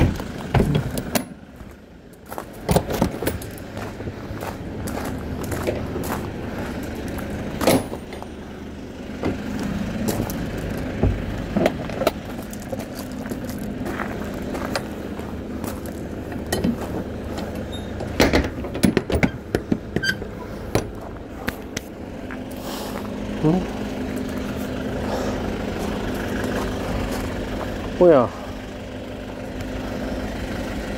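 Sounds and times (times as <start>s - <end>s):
vehicle engine idling: 0.0s - 30.9s
sharp clicks and knocks: 16.3s - 16.8s, 17.4s - 21.9s.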